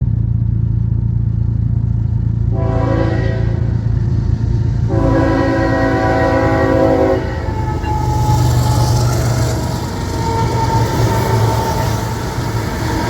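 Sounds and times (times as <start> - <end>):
diesel engines rumbling: 0.0 - 13.0
locomotive air horn blasts: 2.5 - 4.0, 4.8 - 12.9.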